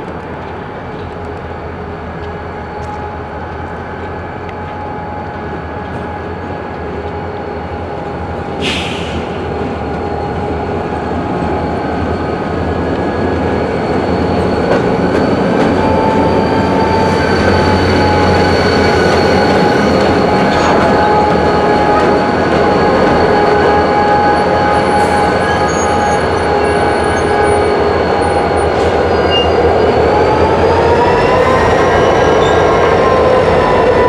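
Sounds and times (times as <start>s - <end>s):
freight train rolling: 0.0s - 34.0s
steel wheels squealing: 8.4s - 34.0s.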